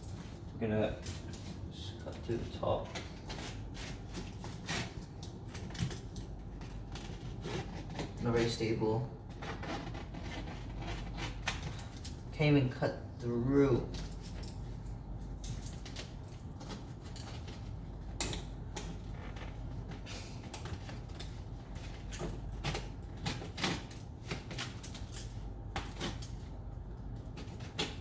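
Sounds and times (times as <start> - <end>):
cardboard scraping and creaking: 6.6 - 11.6.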